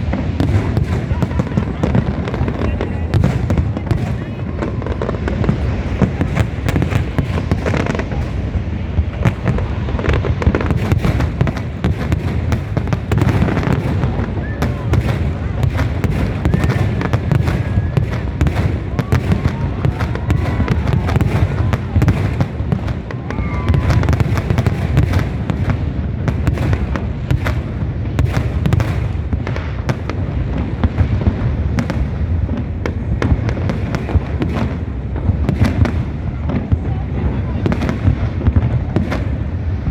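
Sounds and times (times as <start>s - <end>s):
low firework explosions: 0.0s - 39.9s
sharp firework cracks: 0.0s - 39.9s.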